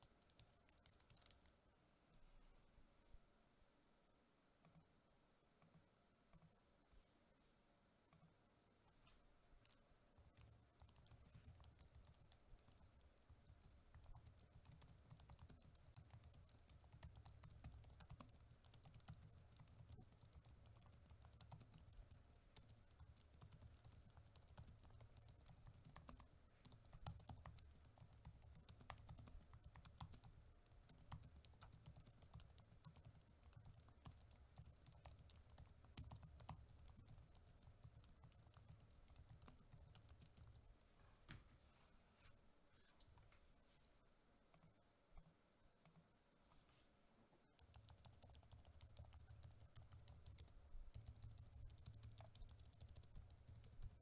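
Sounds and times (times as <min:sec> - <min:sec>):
mechanical keyboard typing: 0:00.0 - 0:01.5, 0:09.6 - 0:40.6, 0:47.6 - 0:54.0.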